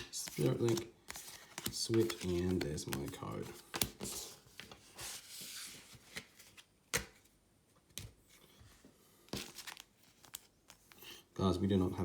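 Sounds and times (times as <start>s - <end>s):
cards clicking and tapping: 0.0s - 4.8s, 6.9s - 7.2s
cards sliding rustle: 0.0s - 7.3s, 9.2s - 11.1s.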